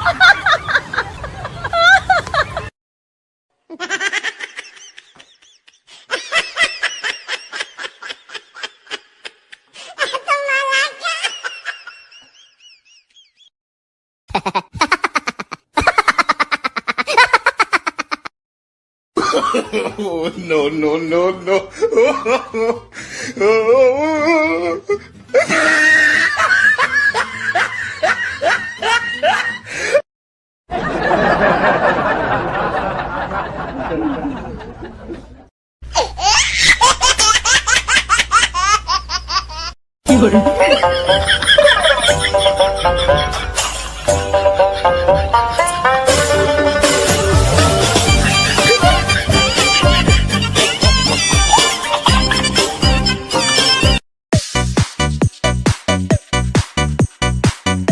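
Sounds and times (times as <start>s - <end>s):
person laughing: 3.7s - 12.3s, 14.3s - 18.3s, 21.2s - 30.0s, 36.0s - 45.8s, 46.8s - 52.8s.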